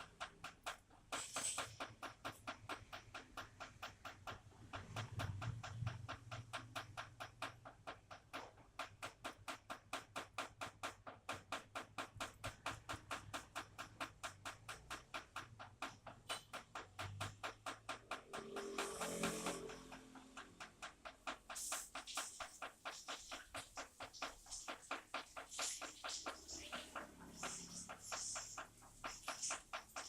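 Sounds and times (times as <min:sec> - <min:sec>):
rainwater dripping: 0:00.0 - 0:30.0.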